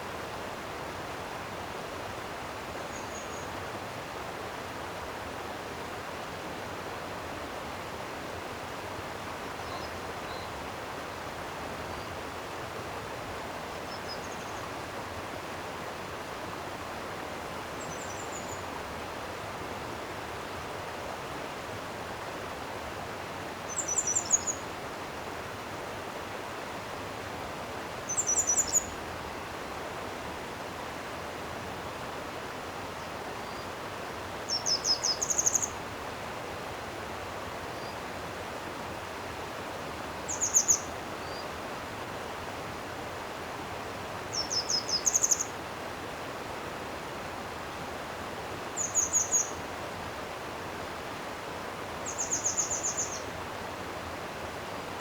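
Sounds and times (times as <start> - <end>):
stream water rushing: 0.0 - 55.0
small bird calling: 23.7 - 24.6, 28.1 - 29.0, 34.5 - 35.8, 40.3 - 41.5, 44.3 - 45.5, 48.8 - 49.6, 52.0 - 53.3.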